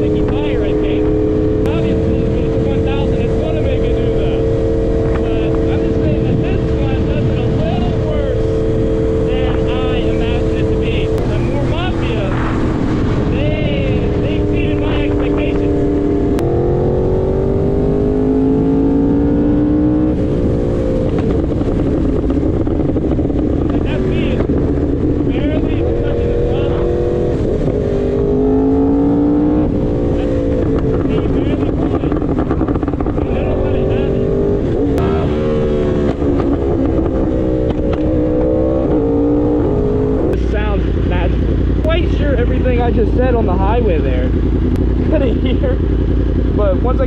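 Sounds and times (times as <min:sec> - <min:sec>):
wind rush: 0:00.0 - 0:42.3
motorcycle engine accelerating: 0:00.0 - 0:47.0.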